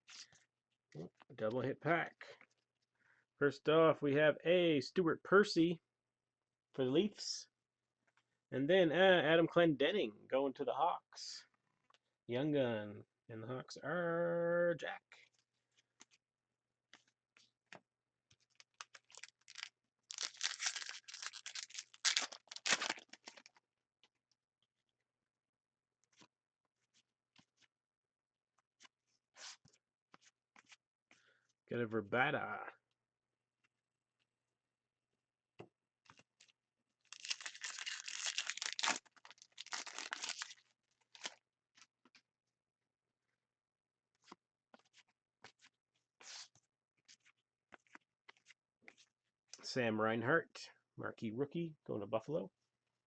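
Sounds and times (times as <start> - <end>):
foil pack crinkling and tearing: 18.6 - 23.6, 37.0 - 41.4
cards clicking and rustling: 37.2 - 41.9.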